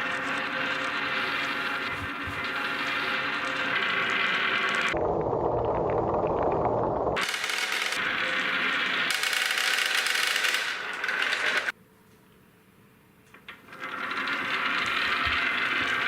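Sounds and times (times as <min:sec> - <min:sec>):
marbles rattling down wooden track: 0:07.2 - 0:11.7, 0:13.7 - 0:16.0.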